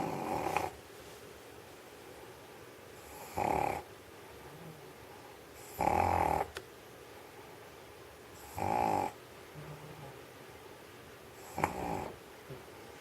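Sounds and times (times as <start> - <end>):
dog snoring: 0.0 - 0.8, 3.0 - 3.9, 5.6 - 6.5, 8.4 - 9.2, 11.4 - 12.2.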